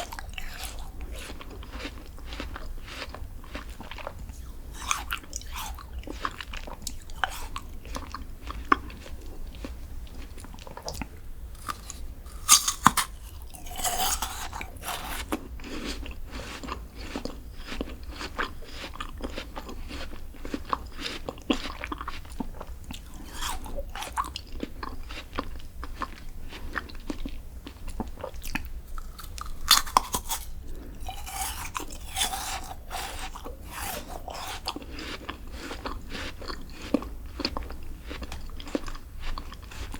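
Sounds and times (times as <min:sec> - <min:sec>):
crunchy bites: 0:00.0 - 0:09.0, 0:10.7 - 0:16.5, 0:22.9 - 0:25.0, 0:28.4 - 0:39.9
chewing clicks: 0:00.0 - 0:09.7, 0:10.4 - 0:15.4, 0:27.9 - 0:39.9
dense crunching: 0:04.3 - 0:06.2, 0:11.6 - 0:15.4, 0:28.9 - 0:35.1.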